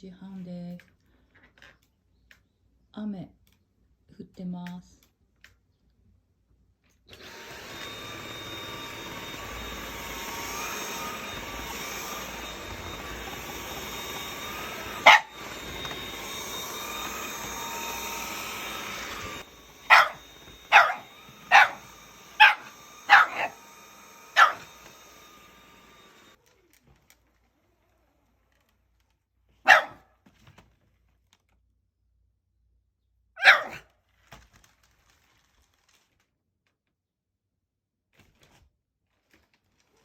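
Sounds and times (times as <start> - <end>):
dog barking: 14.9 - 15.4, 19.9 - 23.6, 24.3 - 24.7, 29.7 - 30.1, 33.4 - 33.9.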